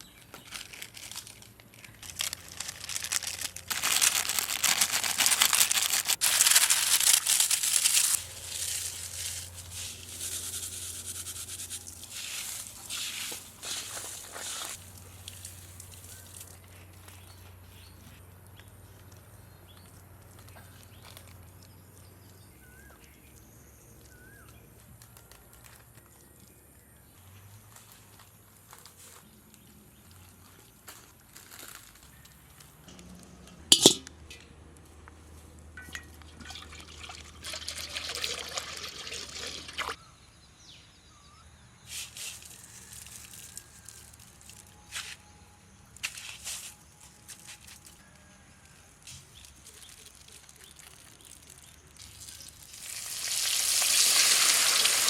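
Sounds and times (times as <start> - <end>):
liquid pouring and trickling: 35.8 - 40.0.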